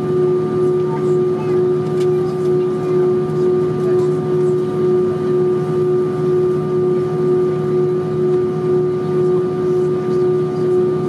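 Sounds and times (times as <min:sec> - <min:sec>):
aircraft cabin hum and whine: 0:00.0 - 0:11.0.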